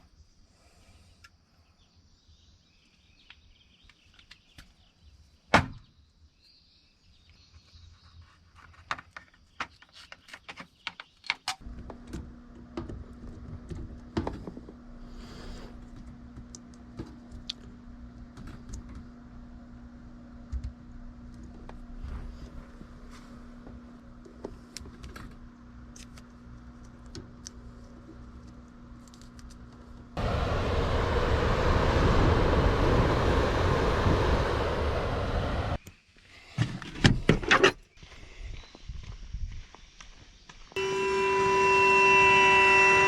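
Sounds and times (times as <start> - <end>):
electric motor humming: 30.1 - 35.8, 40.8 - 43.0.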